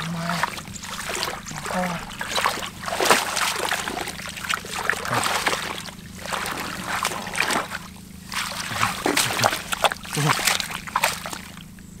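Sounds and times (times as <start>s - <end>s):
shallow water splashing and sloshing: 0.0s - 12.0s.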